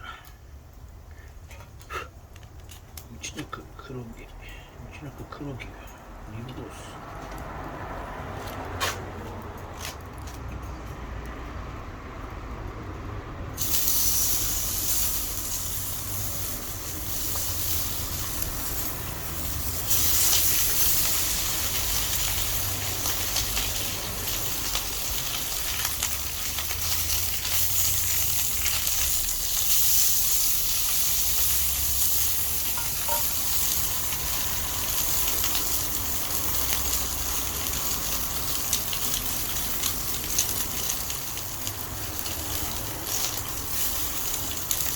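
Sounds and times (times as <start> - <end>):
meat sizzling in a pan: 13.6 - 44.9.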